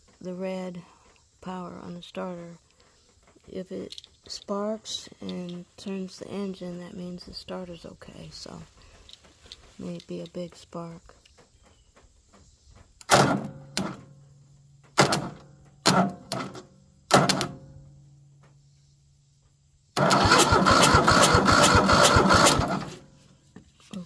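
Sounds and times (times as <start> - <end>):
starter cranking engine: 20.0 - 23.1.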